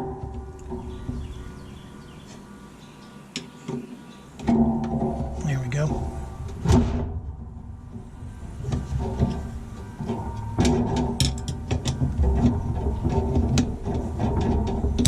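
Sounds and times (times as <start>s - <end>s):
metal parts clicking and knocking: 10.0s - 15.0s.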